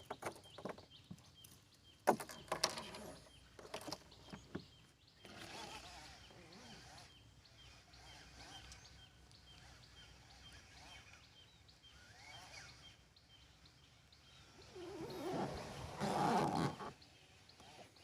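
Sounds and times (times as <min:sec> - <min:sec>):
sweeping bird calls: 0:05.2 - 0:18.0.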